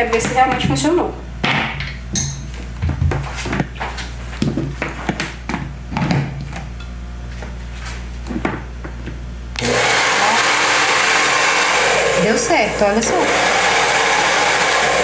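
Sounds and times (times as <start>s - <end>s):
hair dryer motor and fan running: 9.5s - 15.0s.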